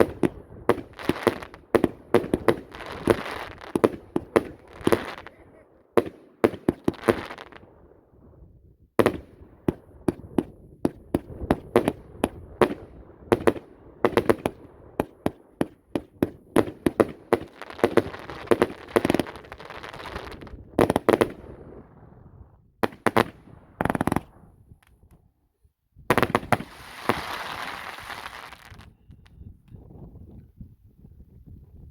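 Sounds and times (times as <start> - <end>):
firework crackling: 0.0 - 5.4, 15.6 - 21.1, 26.1 - 28.9
firework shots and bangs: 26.1 - 28.8.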